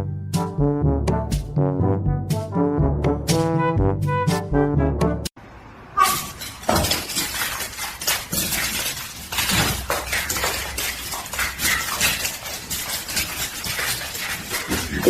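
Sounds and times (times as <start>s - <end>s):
clattering and crashing: 6.0s - 15.0s
sharp knocks and clinks: 6.0s - 15.0s.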